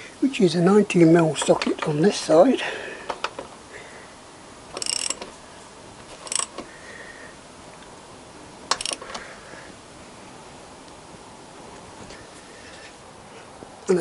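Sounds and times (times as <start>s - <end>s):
socket ratchet clicking: 4.7s - 5.3s, 6.2s - 6.7s, 8.7s - 9.2s.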